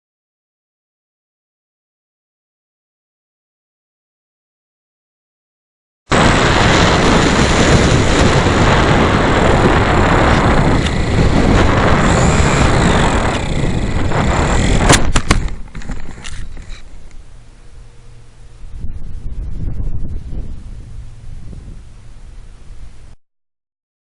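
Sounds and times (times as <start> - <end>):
wind buffeting microphone: 6.1 - 17.2, 18.5 - 23.2
sharp clicks: 14.6 - 17.2.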